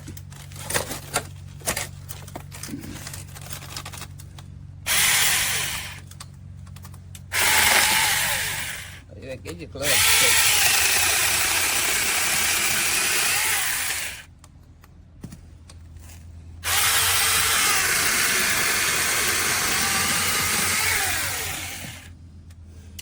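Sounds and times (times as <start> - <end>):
chainsaw cutting wood: 4.9 - 6.0, 7.3 - 9.0, 9.8 - 14.3, 16.6 - 22.1.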